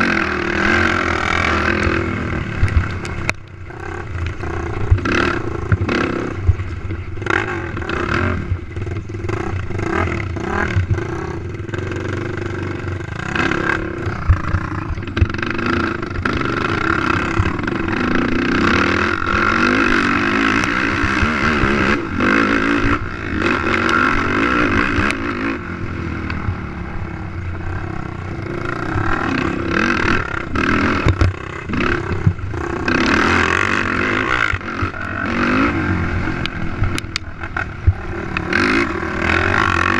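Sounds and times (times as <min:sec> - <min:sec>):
quad engine revving: 0:00.0 - 0:39.9
knocks and clattering over rough ground: 0:00.7 - 0:25.3, 0:28.6 - 0:35.6.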